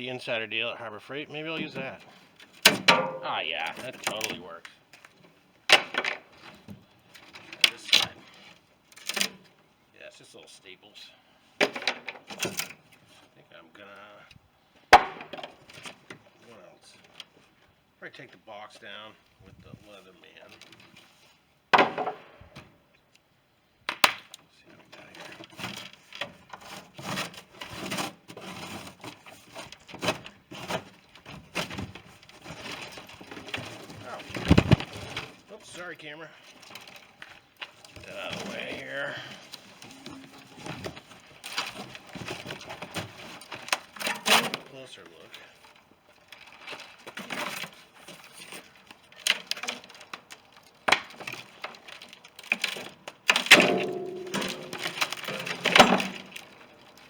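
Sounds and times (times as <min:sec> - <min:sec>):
wooden boards cracking and splitting: 0:01.5 - 0:04.4, 0:05.0 - 0:09.5, 0:14.9 - 0:16.2, 0:21.7 - 0:22.8, 0:23.9 - 0:35.9, 0:36.5 - 0:57.0
packaging rustling and scraping: 0:24.7 - 0:57.0
ringing creak: 0:39.8 - 0:40.8
sharp knocks: 0:53.5 - 0:55.8.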